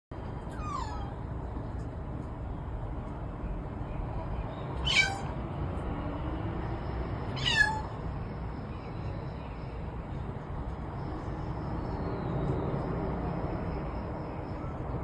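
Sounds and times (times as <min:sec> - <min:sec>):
cat chirping: 0:00.4 - 0:01.3, 0:04.8 - 0:05.4, 0:07.3 - 0:08.0.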